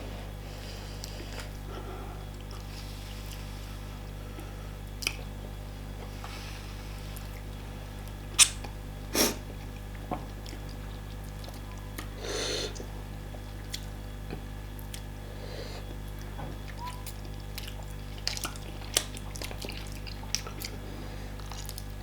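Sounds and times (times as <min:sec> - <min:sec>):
mouth smacks while eating: 0:04.9 - 0:05.3, 0:07.2 - 0:15.1, 0:15.8 - 0:20.8
slurp: 0:08.4 - 0:08.6.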